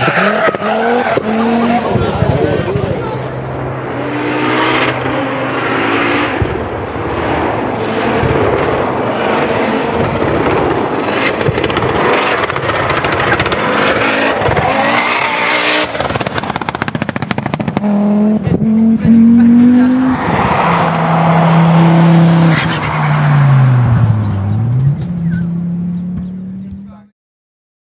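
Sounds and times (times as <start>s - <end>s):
exhaust popping crackle: 0.0s - 19.5s
rally car engine revving hard: 0.0s - 27.0s.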